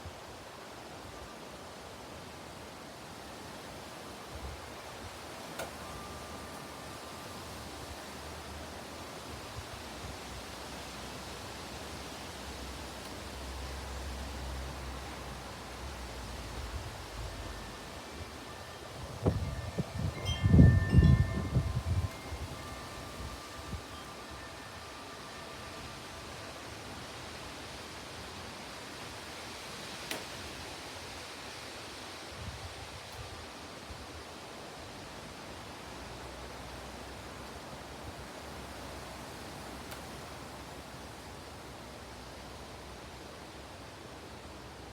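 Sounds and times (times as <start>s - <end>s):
wind rushing hiss: 3.1s - 35.8s
wind buffeting microphone: 18.9s - 23.9s.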